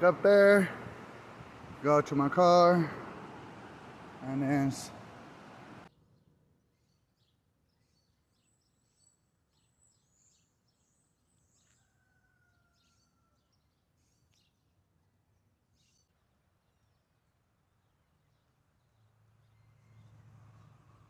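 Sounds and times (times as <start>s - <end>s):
faint high bird chirps: 18.9s - 20.3s.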